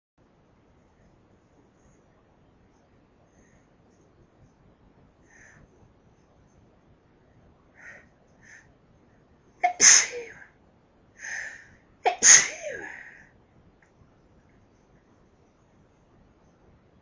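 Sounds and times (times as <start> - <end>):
person sneezing: 9.6 - 10.4, 12.1 - 13.0.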